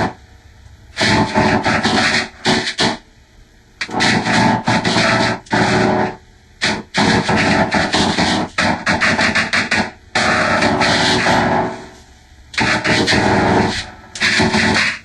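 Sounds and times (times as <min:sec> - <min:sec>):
distorted choppy toy voice: 0:06.6 - 0:11.5, 0:12.6 - 0:15.0.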